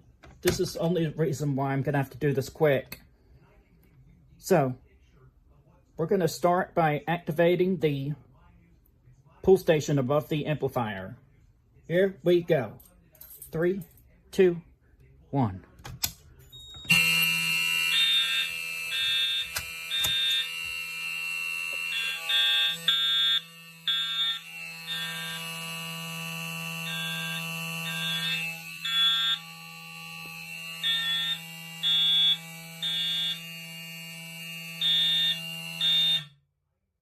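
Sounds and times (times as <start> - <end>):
fire alarm horn buzzing: 16.6 - 36.5
alarm horns beeping: 16.7 - 36.4.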